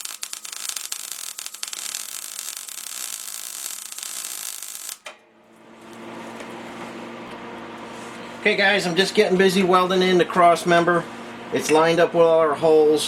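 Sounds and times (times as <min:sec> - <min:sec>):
welder arc crackling and hissing: 0:00.0 - 0:05.1.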